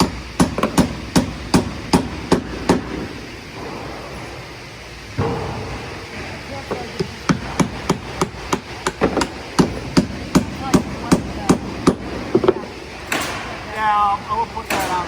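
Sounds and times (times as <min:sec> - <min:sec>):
hammer striking nails: 0:00.0 - 0:03.1, 0:07.0 - 0:13.4.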